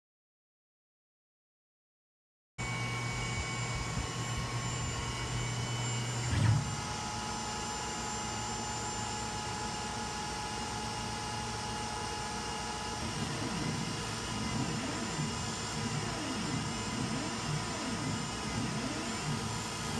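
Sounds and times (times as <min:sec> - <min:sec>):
engraving machine whining: 0:02.6 - 0:19.9
low hum: 0:06.0 - 0:07.3.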